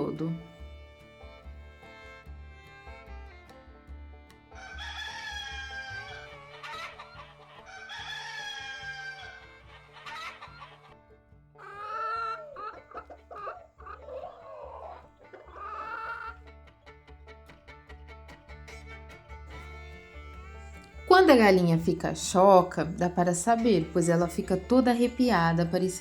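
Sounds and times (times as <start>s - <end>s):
rooster crowing: 4.6s - 10.8s, 11.6s - 16.4s
chickens clucking: 4.6s - 11.0s, 11.6s - 16.4s
soft background music: 19.6s - 26.0s.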